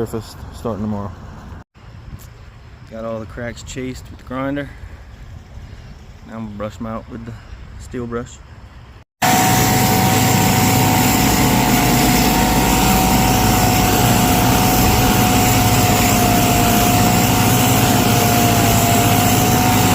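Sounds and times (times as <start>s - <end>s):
angle grinder wire brush on concrete: 9.2s - 19.9s.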